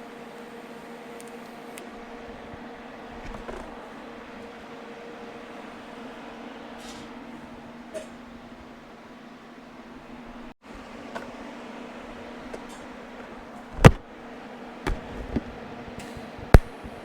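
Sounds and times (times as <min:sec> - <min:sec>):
welder electrical hum: 0:00.0 - 0:17.0.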